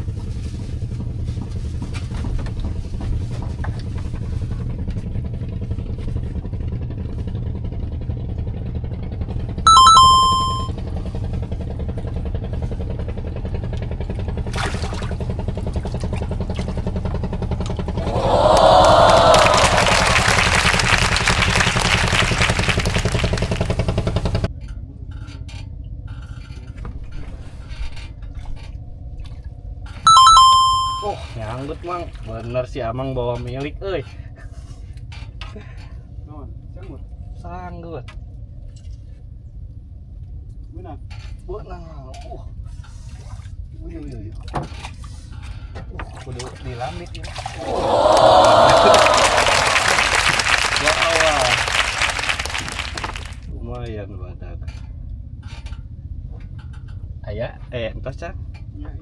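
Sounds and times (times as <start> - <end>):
small engine droning: 20.7 - 24.5.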